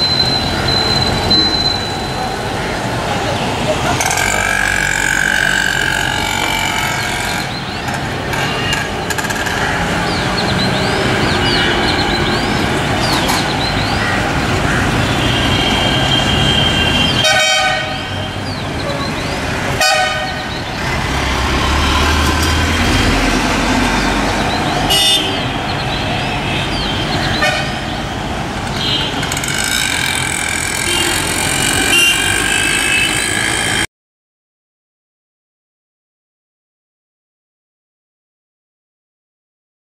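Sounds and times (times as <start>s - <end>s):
steady traffic din: 0.0s - 33.9s
vehicle horns honking: 15.0s - 18.4s, 19.8s - 20.4s, 24.9s - 25.5s, 26.1s - 28.2s, 28.8s - 33.9s.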